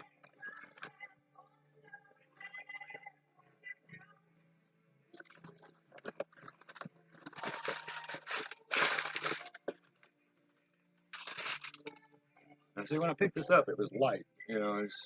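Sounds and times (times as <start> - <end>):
packaging rustling: 5.2 - 10.1, 11.2 - 11.9.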